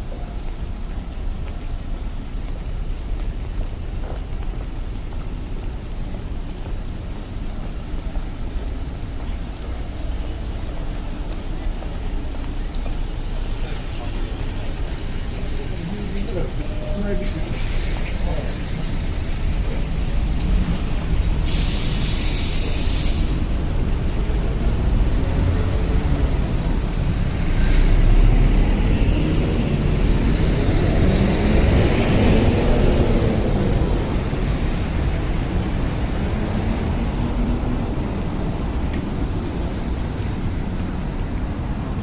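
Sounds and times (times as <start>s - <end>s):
heavy traffic rumbling: 0.0s - 42.0s
air hiss: 17.2s - 19.3s, 20.0s - 24.2s.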